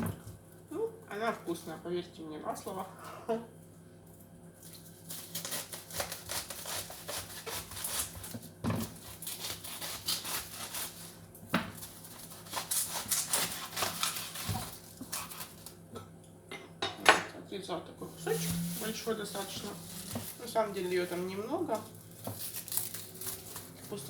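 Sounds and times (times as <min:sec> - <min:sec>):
knife crunching through cabbage: 0:04.5 - 0:15.8, 0:19.4 - 0:24.0.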